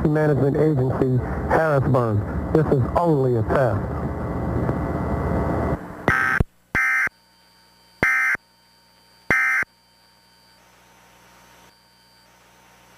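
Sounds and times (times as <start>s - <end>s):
buzzy digital data tones: 4.2s - 12.9s.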